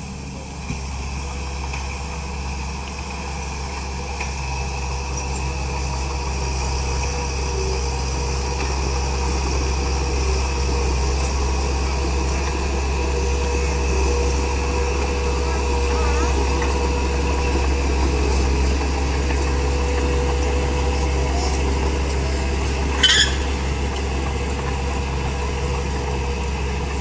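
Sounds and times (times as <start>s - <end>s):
bulldozer diesel engine running: 0.0s - 27.0s.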